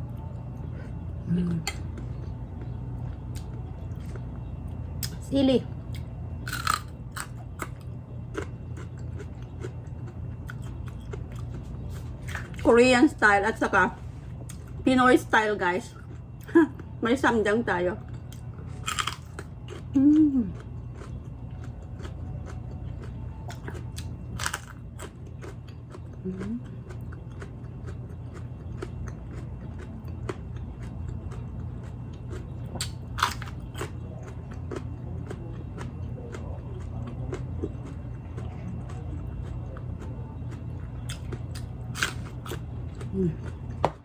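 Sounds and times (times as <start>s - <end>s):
crunchy chewing: 5.9s - 12.7s, 18.0s - 43.8s
person humming: 20.0s - 20.6s.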